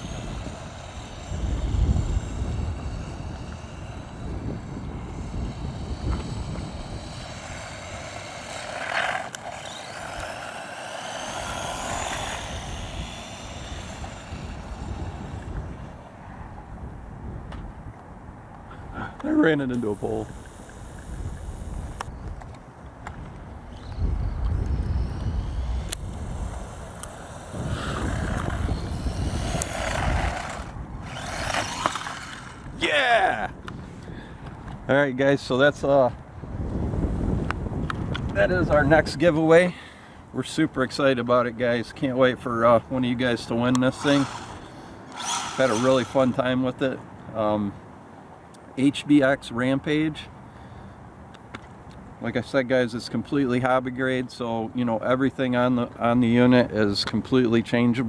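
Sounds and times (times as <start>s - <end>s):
toy truck electric motor whining: 0.0s - 16.1s, 19.0s - 22.3s, 23.6s - 33.4s, 43.1s - 46.6s
sharp clicks: 23.8s - 32.5s.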